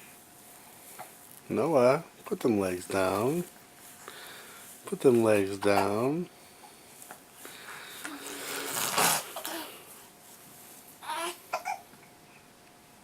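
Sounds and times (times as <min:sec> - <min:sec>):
baby cough-like burst: 0:08.8 - 0:09.8
high-pitched baby vocalisations: 0:11.0 - 0:11.8.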